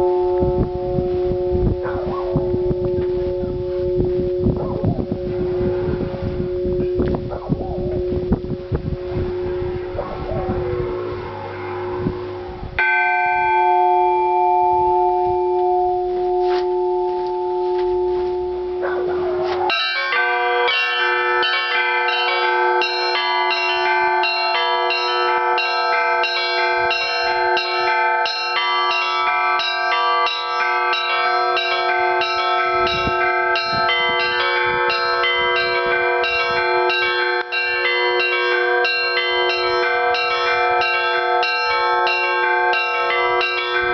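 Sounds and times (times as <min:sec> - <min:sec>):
deep church bell ringing: 0:00.0 - 0:43.9
small bells chiming rapidly: 0:19.7 - 0:43.9.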